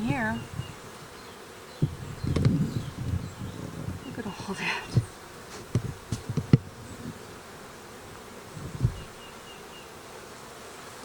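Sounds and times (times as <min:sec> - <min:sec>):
honey bees buzzing: 0:00.0 - 0:11.0
soft low thumps: 0:01.8 - 0:07.3, 0:08.6 - 0:09.2.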